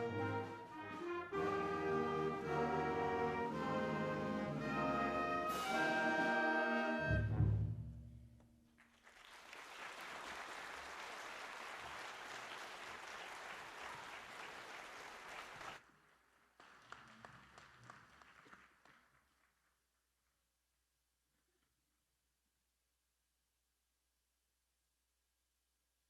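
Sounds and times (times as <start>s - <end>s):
audience applauding: 8.8s - 19.6s
scattered claps: 8.8s - 19.6s.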